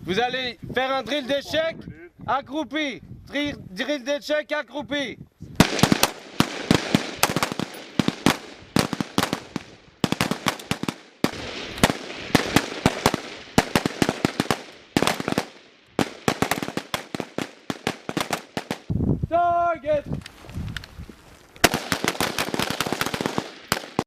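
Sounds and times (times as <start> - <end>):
assault rifles firing volleys: 5.6 - 18.9, 21.6 - 24.0.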